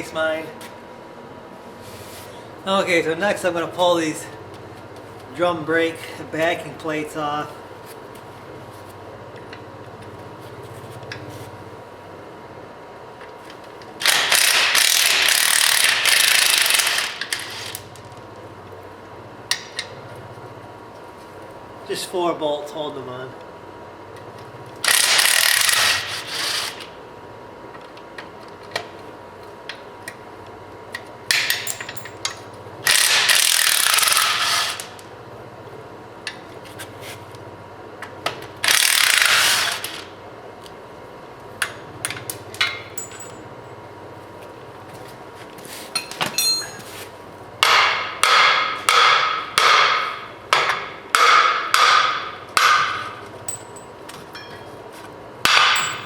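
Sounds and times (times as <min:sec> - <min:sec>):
loud bursts of tool noise: 0:14.0 - 0:18.0, 0:24.8 - 0:27.0, 0:32.8 - 0:35.1, 0:38.6 - 0:40.2
hammer striking metal: 0:47.6 - 0:53.8, 0:55.4 - 0:56.0.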